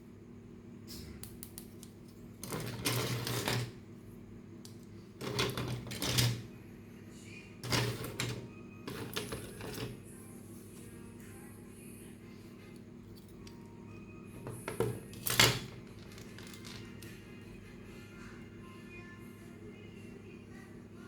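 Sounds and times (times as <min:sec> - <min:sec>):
soft background music: 0:05.3 - 0:21.0
plastic parts clicking and rattling: 0:14.6 - 0:16.9.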